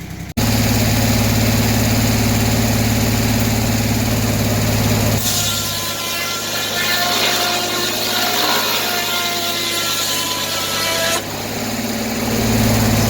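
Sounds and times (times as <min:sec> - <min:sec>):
sawmill engine running: 0:00.0 - 0:13.0
saw blade cutting log: 0:03.4 - 0:13.0.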